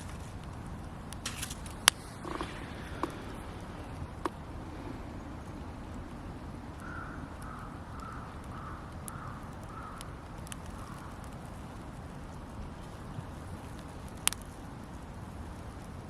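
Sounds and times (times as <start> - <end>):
campfire crackling: 0.0 - 16.0
steady low rumble: 0.0 - 16.0
crow cawing: 6.8 - 10.2, 10.8 - 11.2.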